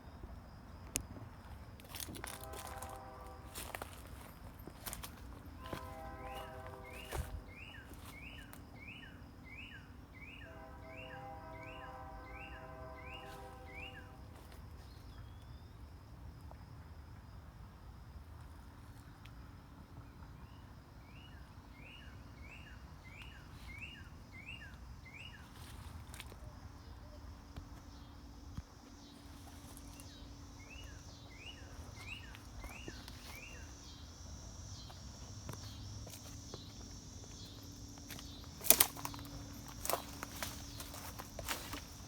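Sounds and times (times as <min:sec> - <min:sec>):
insects droning: 0:00.0 - 0:42.0
footsteps: 0:01.4 - 0:08.2, 0:34.8 - 0:42.0.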